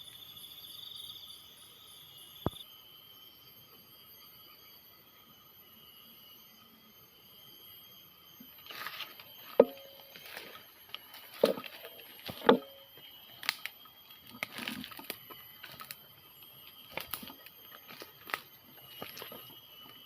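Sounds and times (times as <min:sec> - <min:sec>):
footsteps crunching through dry leaves: 0:08.6 - 0:16.0.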